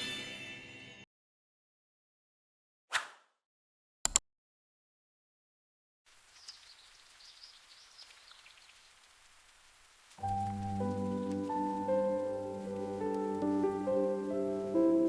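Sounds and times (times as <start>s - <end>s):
faint steady rain: 6.1s - 15.0s
high bird chirps: 6.4s - 9.0s.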